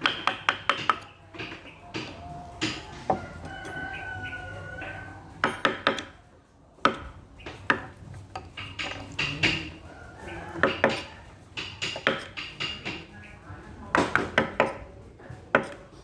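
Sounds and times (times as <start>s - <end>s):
mallet tapping chisel into wood: 0.0s - 3.2s, 5.4s - 6.2s, 6.8s - 9.8s, 10.5s - 13.1s, 13.9s - 14.9s, 15.5s - 15.9s.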